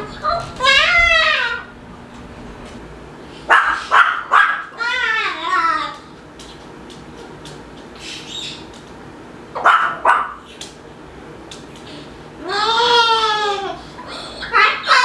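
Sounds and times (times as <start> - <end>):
cockatoo calling: 0.0 - 1.8.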